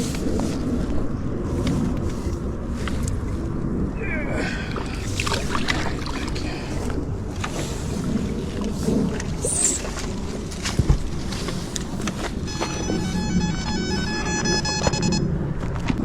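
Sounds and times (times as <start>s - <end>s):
low outdoor rumble: 0.0s - 16.0s
electronic beeping tone: 12.4s - 15.4s.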